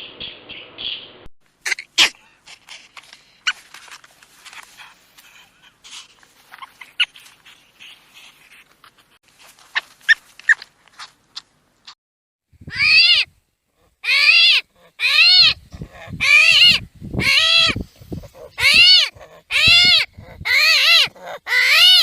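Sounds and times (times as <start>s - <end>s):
faint high squeaks and chirps: 5.9s - 8.9s
animal bleating: 13.8s - 22.0s.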